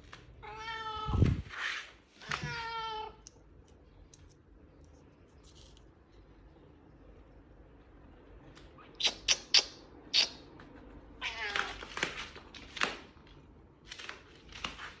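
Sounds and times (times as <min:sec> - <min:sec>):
cat meowing: 0:00.4 - 0:01.4, 0:02.2 - 0:03.2, 0:11.2 - 0:12.0.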